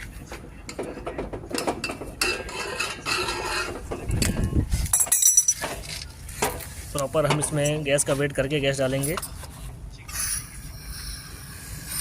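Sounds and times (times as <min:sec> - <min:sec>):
metal tools clinking and rattling: 0:00.7 - 0:06.6.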